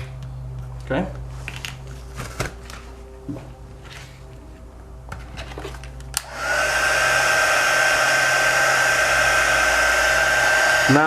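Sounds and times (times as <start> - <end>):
heat gun blowing with whine: 6.2 - 11.0.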